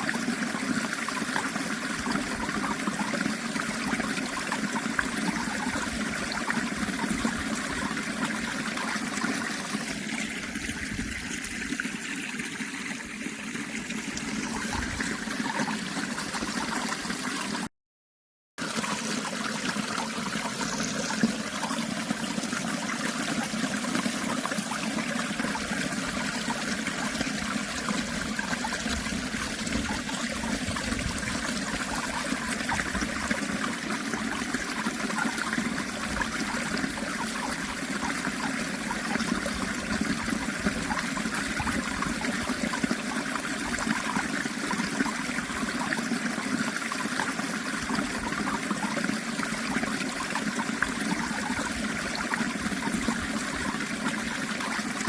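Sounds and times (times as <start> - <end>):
water trickling: 0.0 - 17.7, 18.6 - 55.0.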